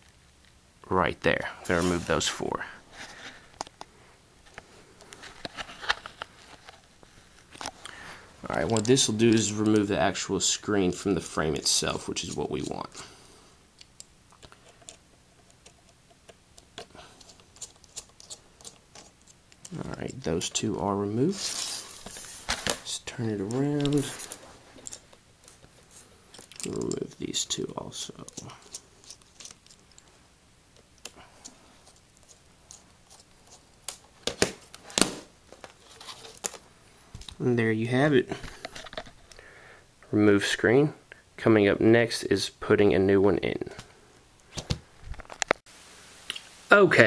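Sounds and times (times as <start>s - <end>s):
screwdriver ticks and scrapes: 13.8s - 19.8s, 28.1s - 30.1s.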